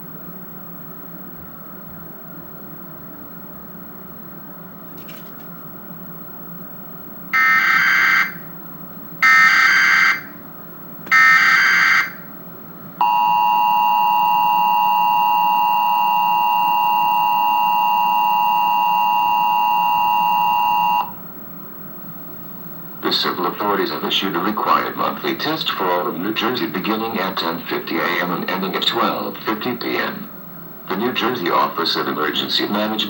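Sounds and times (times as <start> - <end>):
two-tone alert signal: 13.0 - 21.1.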